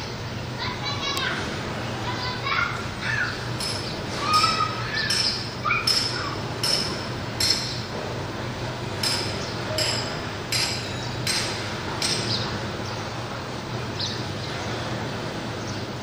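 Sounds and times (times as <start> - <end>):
birds clicking: 3.1 - 7.9, 9.0 - 13.1.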